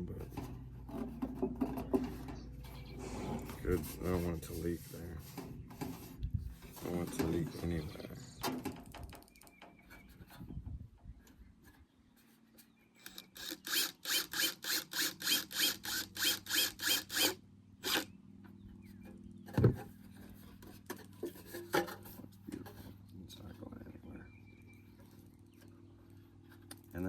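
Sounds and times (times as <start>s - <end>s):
hand tool rasping strokes: 13.0s - 18.0s.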